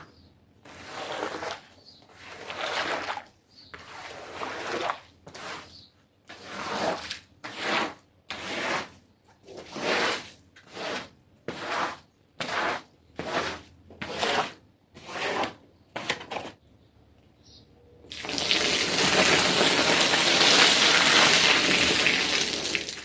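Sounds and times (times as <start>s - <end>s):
wet scraping on soaked carpet: 0.6s - 16.5s, 18.1s - 23.0s
water squishing: 18.1s - 23.0s.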